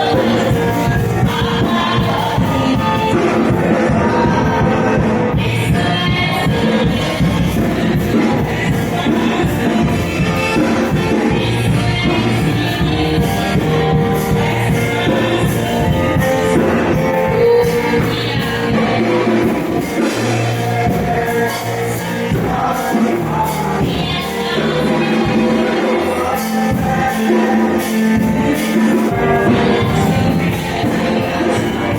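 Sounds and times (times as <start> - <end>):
band with bass and drums: 0.0 - 31.9
person singing: 0.0 - 31.9.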